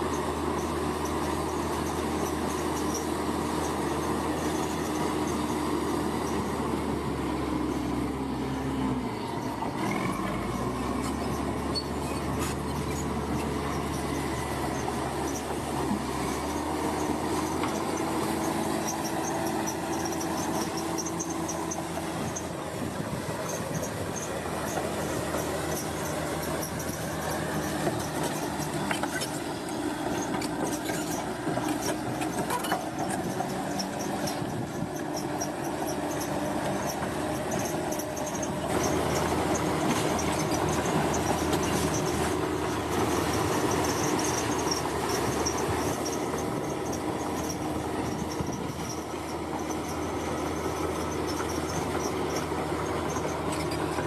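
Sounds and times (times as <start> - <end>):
heavy construction machinery running: 0.0 - 54.0
metallic squeals and clanks: 8.7 - 54.0.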